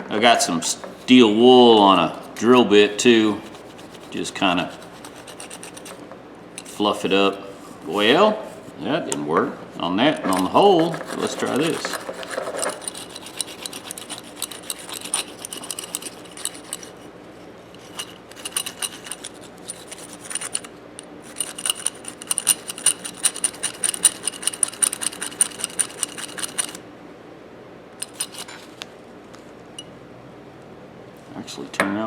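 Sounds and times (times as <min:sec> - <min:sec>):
scrubbing steel ratchet head: 0:01.0 - 0:06.0, 0:06.6 - 0:07.4, 0:10.2 - 0:17.0, 0:17.8 - 0:26.8, 0:28.0 - 0:28.8.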